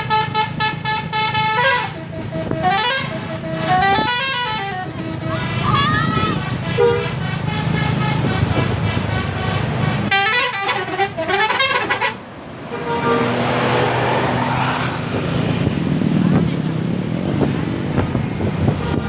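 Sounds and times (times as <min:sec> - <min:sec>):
bus horn playing a tune: 0:00.0 - 0:14.2, 0:18.4 - 0:19.0
bus engine running: 0:00.0 - 0:19.0.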